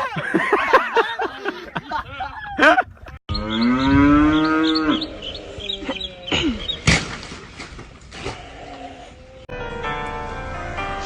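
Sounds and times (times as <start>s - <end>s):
cow mooing: 3.3s - 6.4s.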